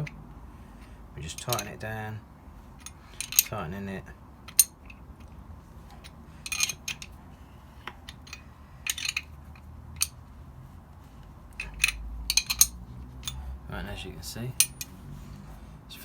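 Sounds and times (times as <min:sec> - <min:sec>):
spanner clinking on metal tool: 0:01.3 - 0:01.7, 0:02.8 - 0:03.5, 0:04.5 - 0:05.0, 0:06.0 - 0:07.1, 0:08.1 - 0:09.3, 0:11.6 - 0:13.4, 0:14.6 - 0:14.9.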